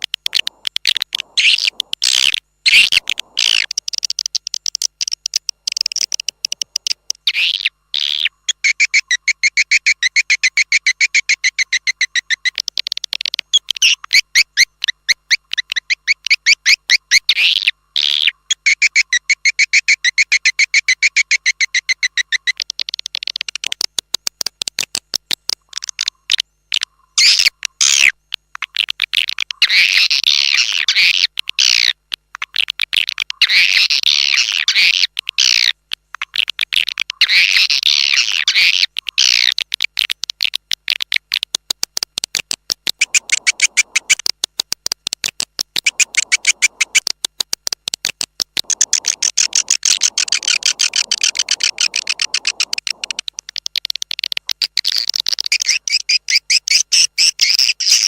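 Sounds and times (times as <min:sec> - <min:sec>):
twittering bird trills: 0:00.0 - 0:22.8, 0:43.0 - 0:44.2, 0:45.8 - 0:47.0, 0:48.6 - 0:53.4
swiftlet chirping: 0:43.0 - 0:44.2, 0:45.8 - 0:47.1, 0:48.6 - 0:53.3.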